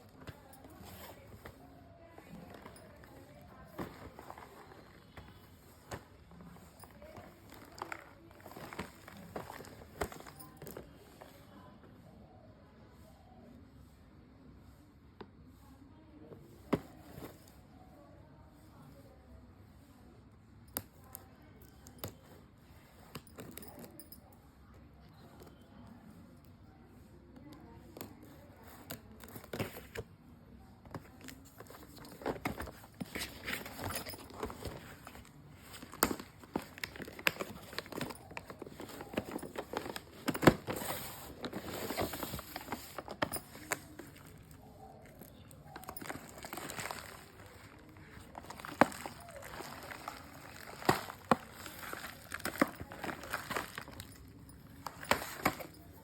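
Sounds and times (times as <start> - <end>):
biscuit packaging clicks and taps: 30.8 - 56.0.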